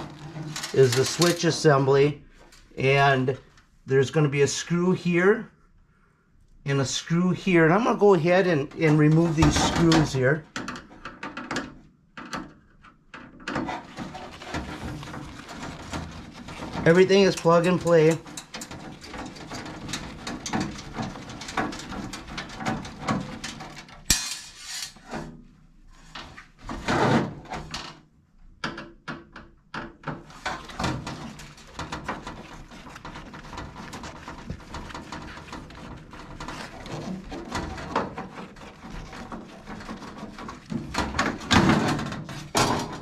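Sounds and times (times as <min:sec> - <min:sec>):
sheet metal clicks and rattles: 0:00.0 - 0:01.5, 0:09.5 - 0:25.2, 0:28.6 - 0:43.0.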